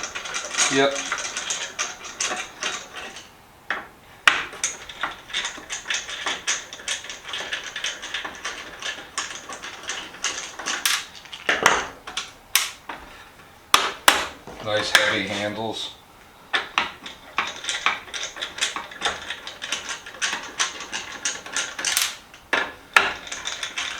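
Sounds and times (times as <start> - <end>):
metal clatter: 4.6 - 12.9, 17.0 - 23.9
ratchet wrench clicking: 22.0 - 22.2.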